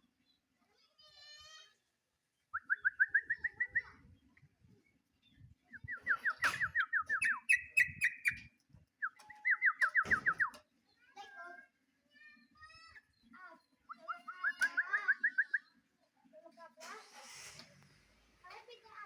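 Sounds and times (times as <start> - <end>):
bird singing rapid trills: 5.8 - 8.4, 9.0 - 10.5.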